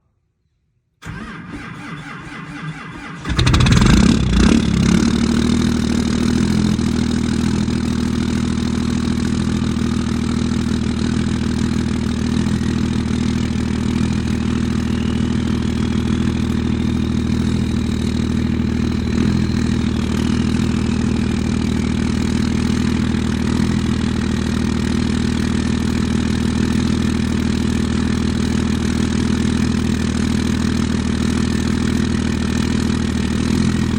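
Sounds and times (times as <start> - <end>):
diesel engine starting and idling: 1.0 - 33.9
faint turbo whistle: 12.5 - 23.0.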